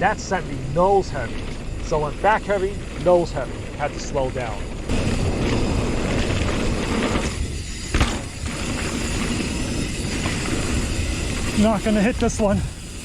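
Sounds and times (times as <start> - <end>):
mountain bike rattling: 0.0 - 13.0
wind on microphone: 4.6 - 13.0.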